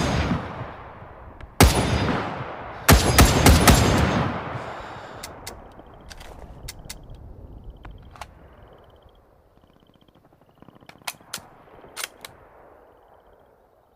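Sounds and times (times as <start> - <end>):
echoing rifle shot: 0.0 - 6.1
sharp clicks: 5.1 - 8.4, 10.8 - 12.4.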